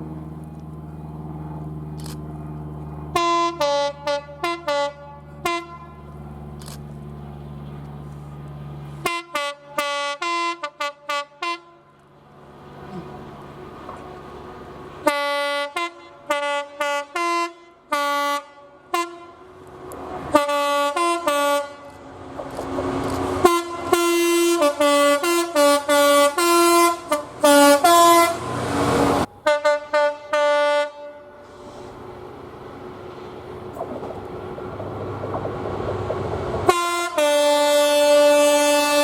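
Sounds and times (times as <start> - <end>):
passing train rushing: 0.0 - 39.0
two-note train horn: 3.1 - 6.2, 9.0 - 12.0, 15.0 - 19.6, 20.3 - 21.9, 23.4 - 31.9, 36.7 - 39.0.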